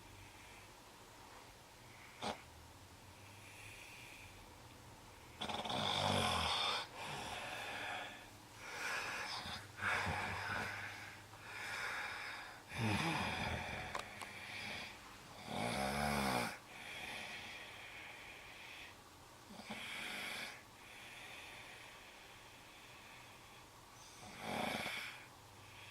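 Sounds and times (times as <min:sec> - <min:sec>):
wheezy hissing breaths: 0:00.0 - 0:25.9
person snoring: 0:05.4 - 0:17.6.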